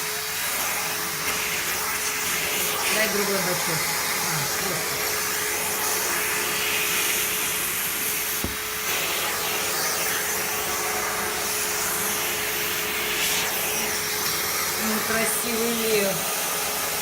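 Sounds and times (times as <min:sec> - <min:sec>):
vacuum cleaner running: 0:00.0 - 0:17.0
short thump: 0:08.4 - 0:08.7.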